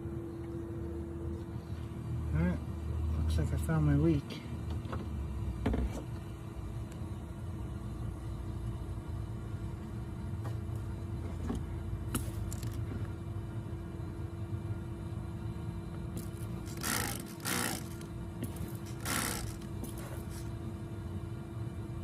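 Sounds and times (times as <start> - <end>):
vacuum motor humming: 16.2 - 20.4
air hissing: 16.2 - 20.5.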